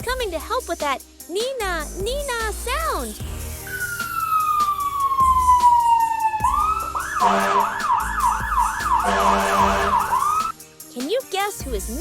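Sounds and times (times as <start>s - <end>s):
fire engine siren: 3.7s - 10.5s.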